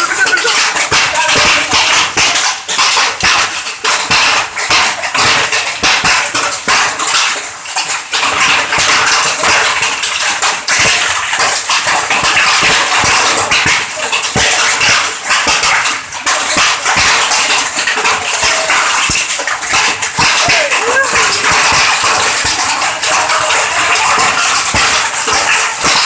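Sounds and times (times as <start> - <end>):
hailstones clattering: 0.0 - 26.0.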